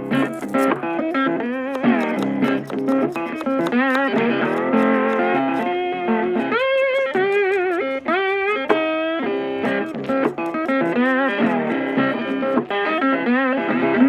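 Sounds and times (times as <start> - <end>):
electric guitar melody: 11.4 - 14.0.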